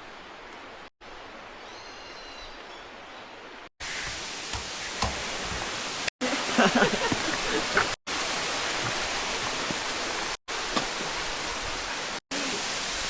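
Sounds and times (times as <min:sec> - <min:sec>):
waterfall rushing: 0:03.8 - 0:13.0.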